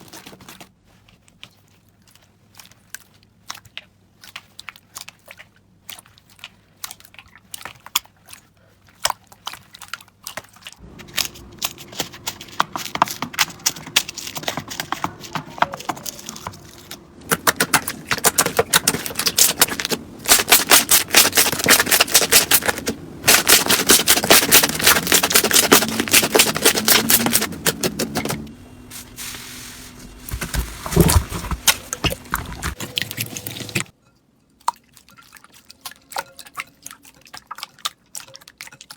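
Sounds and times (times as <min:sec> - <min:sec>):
slime crackling and popping: 0:16.0 - 0:27.5.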